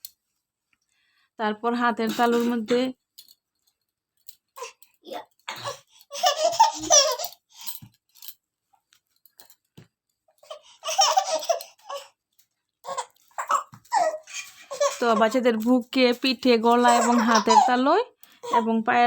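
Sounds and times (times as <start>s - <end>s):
baby laughing and giggling: 5.5s - 7.4s, 10.4s - 12.1s, 12.8s - 15.4s, 16.7s - 17.8s, 18.4s - 18.7s.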